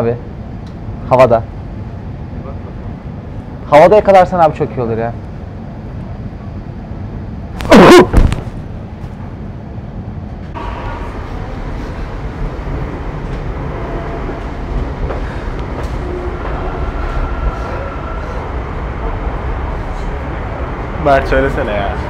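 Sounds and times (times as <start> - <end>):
train rumble inside carriage: 0.0 - 22.0.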